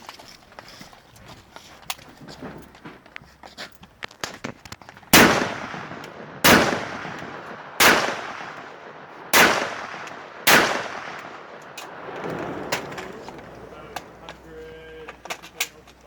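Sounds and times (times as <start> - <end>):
rifle shots with echo: 5.1 - 14.3.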